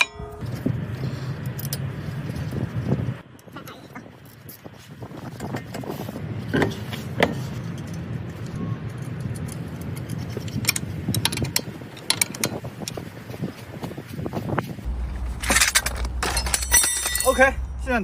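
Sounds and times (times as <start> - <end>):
metal tools clicking and knocking: 8.9 - 13.0, 15.4 - 17.5
steady low hum: 14.5 - 18.0.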